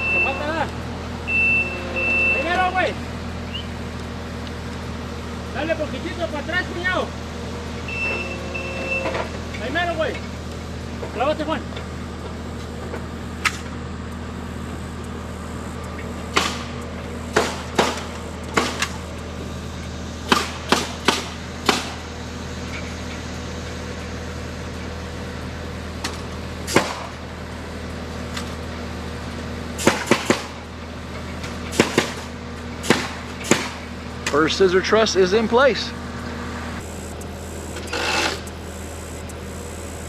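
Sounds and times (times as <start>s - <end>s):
engine idling: 0.0s - 40.0s
hammer driving nails into wood: 20.3s - 22.0s, 29.8s - 30.5s, 32.8s - 33.8s.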